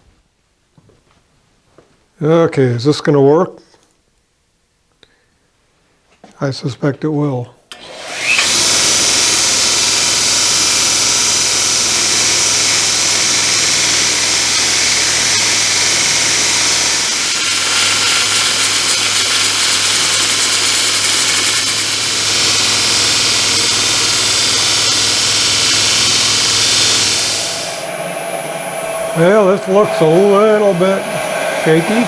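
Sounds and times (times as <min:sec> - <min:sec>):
bandsaw machine hissing and humming: 0:07.7 - 0:32.0.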